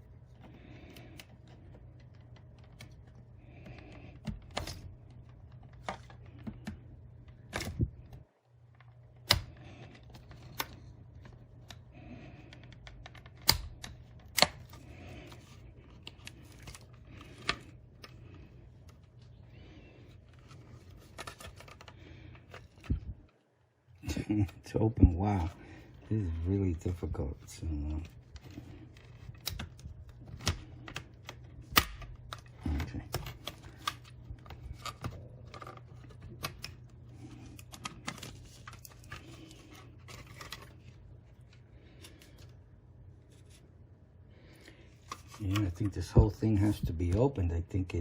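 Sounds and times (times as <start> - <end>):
low steady hum: 0.0 - 48.0.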